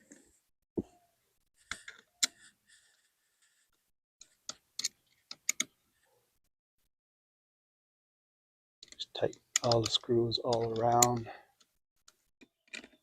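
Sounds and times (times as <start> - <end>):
clicks of hard plastic parts: 8.8 - 11.7.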